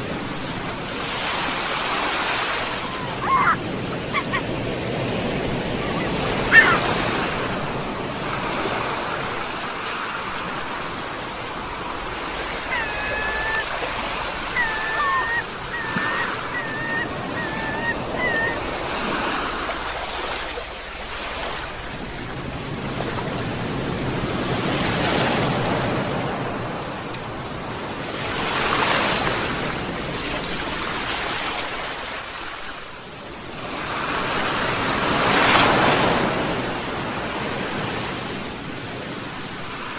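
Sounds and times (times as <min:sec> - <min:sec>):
sea waves breaking: 0:00.0 - 0:39.9
seagulls calling: 0:02.1 - 0:07.7, 0:11.6 - 0:19.9.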